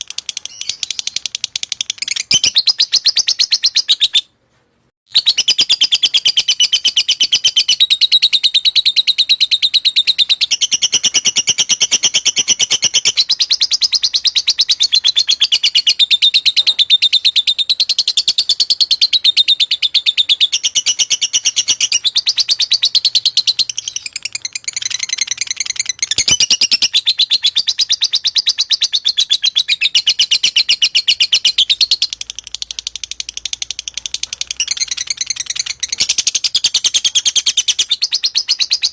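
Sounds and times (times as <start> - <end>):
lovebird chattering trill: 5.1 - 38.9.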